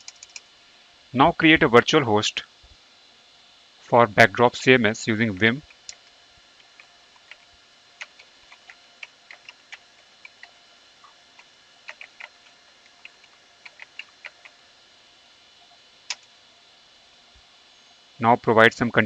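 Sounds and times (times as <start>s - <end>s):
computer keyboard keystrokes: 0.0s - 0.4s, 6.7s - 10.6s, 11.4s - 14.6s.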